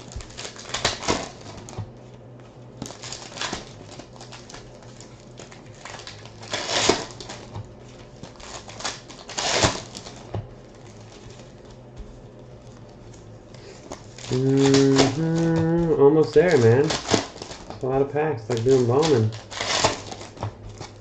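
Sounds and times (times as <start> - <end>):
card pack wrapper ripping: 0.0 - 1.8, 2.8 - 10.2, 13.6 - 21.0
cards clicking and rustling: 12.8 - 21.0.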